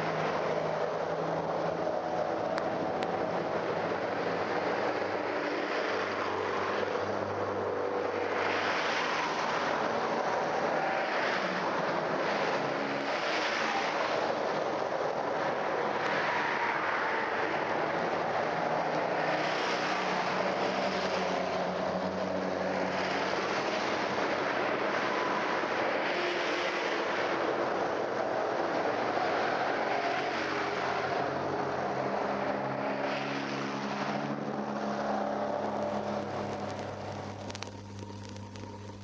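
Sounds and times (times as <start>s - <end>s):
vehicles passing: 0.0s - 39.0s
vinyl hiss: 35.1s - 39.0s.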